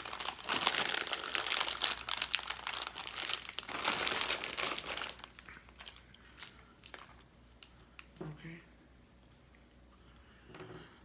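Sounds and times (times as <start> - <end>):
candy wrapper crinkling: 0.0 - 8.2.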